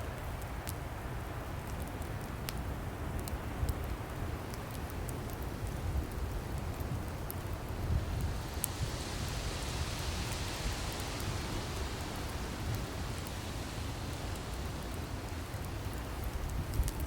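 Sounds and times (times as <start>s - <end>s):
fire crackles: 0.0s - 17.0s
wood fire hissing: 0.1s - 17.0s.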